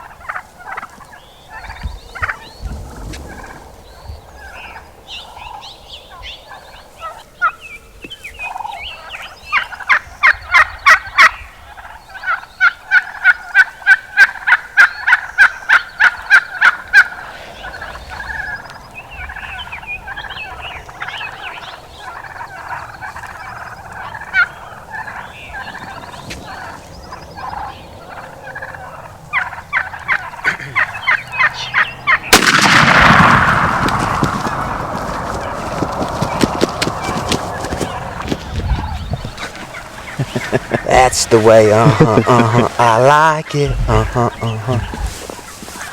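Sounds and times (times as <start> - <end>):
turkeys yelping: 0.0 - 3.7, 8.4 - 45.9
shotgun blast with echo: 32.3 - 35.6.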